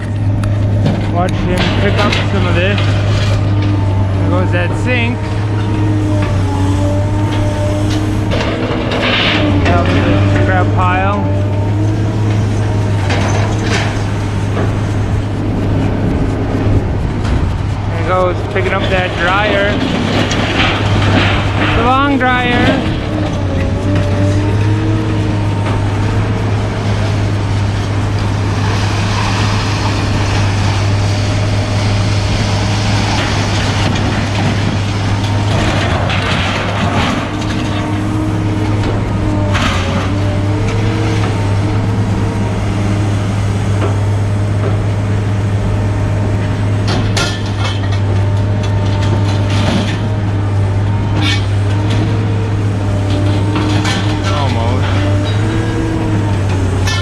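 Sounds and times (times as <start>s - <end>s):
scrap metal clanking: 0.0s - 15.2s, 46.6s - 57.0s
heavy engine humming: 0.0s - 57.0s.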